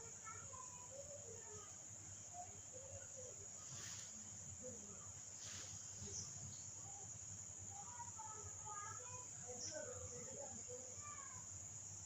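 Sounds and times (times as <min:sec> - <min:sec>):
cricket chorus chirring: 0:00.0 - 0:12.0.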